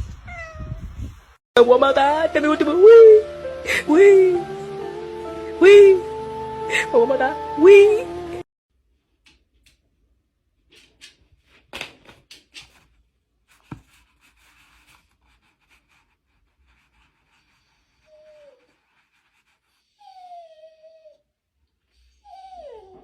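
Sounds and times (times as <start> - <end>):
pet whining cries: 0.3 - 0.8, 22.2 - 23.0.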